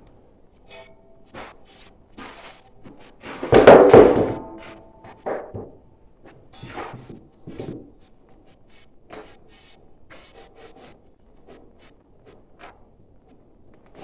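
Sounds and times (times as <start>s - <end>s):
light scraping and rubbing: 0.7s - 3.7s, 6.6s - 14.0s.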